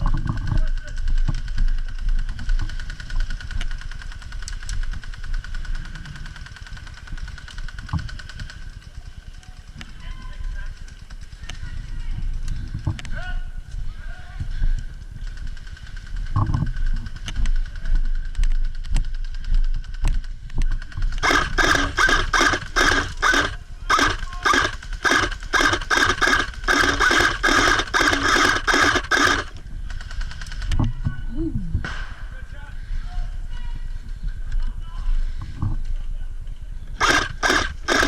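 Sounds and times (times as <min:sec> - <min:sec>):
airsoft gun firing: 0:21.2 - 0:29.6, 0:37.0 - 0:38.0.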